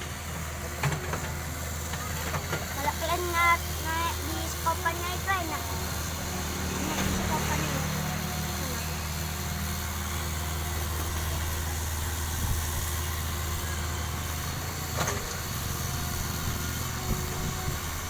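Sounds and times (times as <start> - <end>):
excavator engine running: 0.0 - 18.0.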